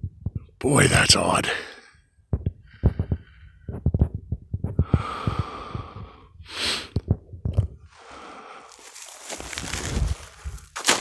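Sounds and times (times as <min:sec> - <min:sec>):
short low thumps: 0:00.0 - 0:00.6, 0:02.3 - 0:07.9
person breathing hard: 0:01.5 - 0:03.9, 0:04.7 - 0:07.1, 0:07.9 - 0:09.2
sharp sniff: 0:06.5 - 0:07.0.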